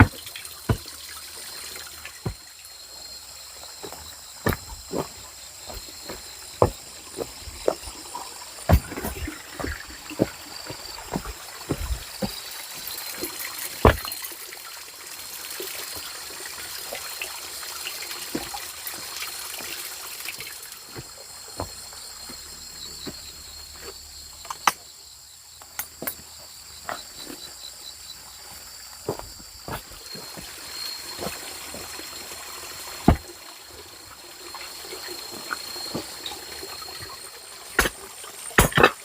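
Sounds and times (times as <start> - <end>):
insects droning: 0.0 - 39.0
rapid pulsing insect chirp: 0.0 - 39.0.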